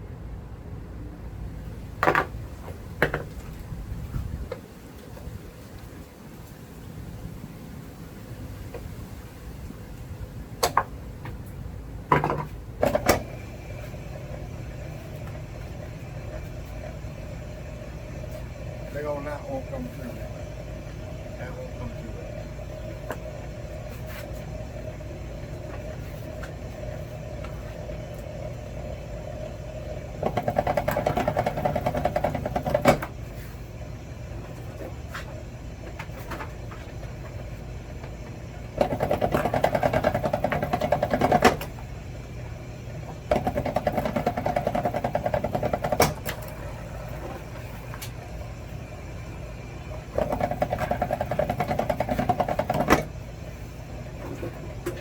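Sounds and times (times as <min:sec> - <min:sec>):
wire stripping machine humming: 0:11.4 - 0:55.0.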